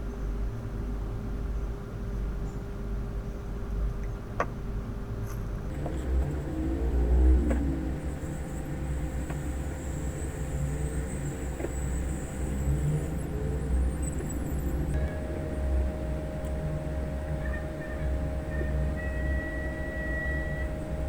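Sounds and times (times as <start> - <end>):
hot air station blowing: 5.7 - 21.0.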